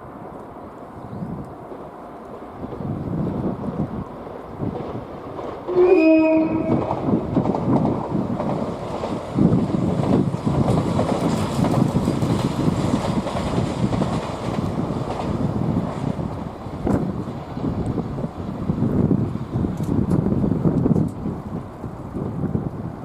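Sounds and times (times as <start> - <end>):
train wheels rumbling on rail: 0.0 - 23.0
wind buffeting microphone: 0.9 - 23.0
train horn blast: 5.7 - 7.1.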